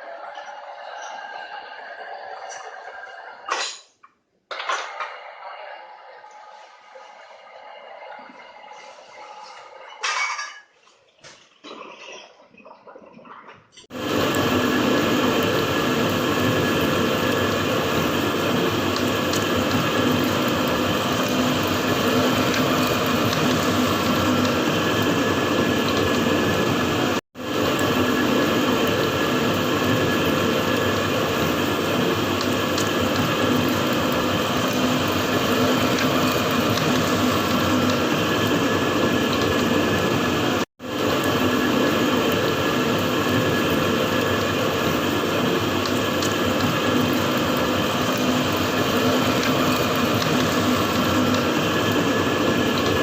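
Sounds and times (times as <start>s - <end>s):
machine hum: 13.9s - 53.0s.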